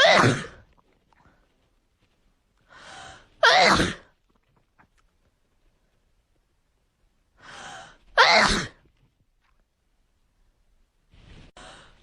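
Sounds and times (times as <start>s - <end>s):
breathy in-breath: 2.7s - 3.4s, 7.4s - 8.0s, 11.5s - 12.0s
person sneezing: 8.2s - 8.8s.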